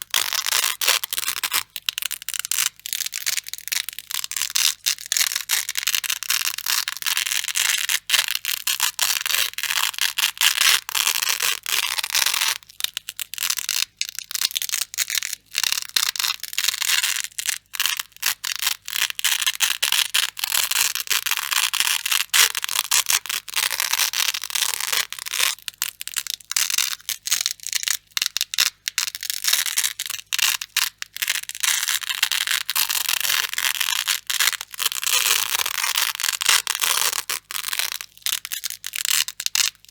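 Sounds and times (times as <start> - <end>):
velcro ripping: 0.0 - 1.7.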